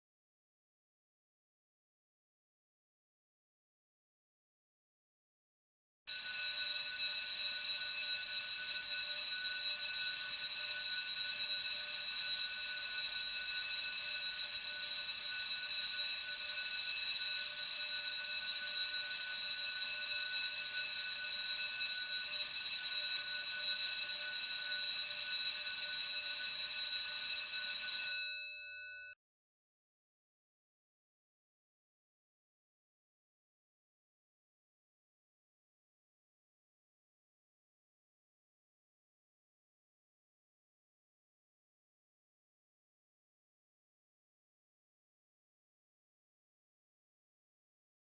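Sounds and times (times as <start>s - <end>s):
school bell ringing: 27.3s - 28.6s.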